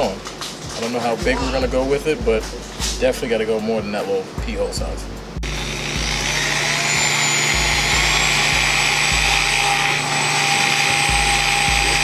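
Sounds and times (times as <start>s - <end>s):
electric drill whining: 5.4s - 12.0s.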